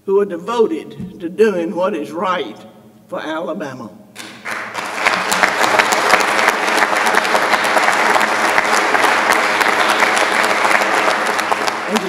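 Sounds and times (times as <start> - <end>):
audience applauding: 4.2 - 12.0.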